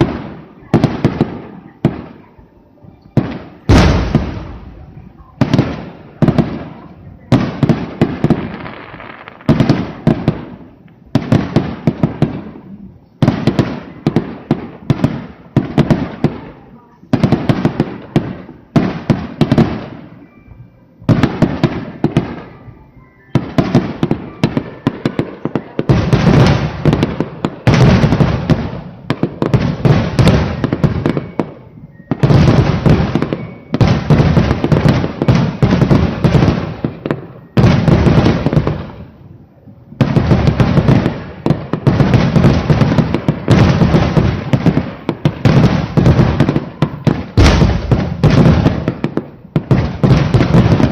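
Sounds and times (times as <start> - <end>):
firework shells bursting: 3.2 - 5.8, 47.3 - 50.9.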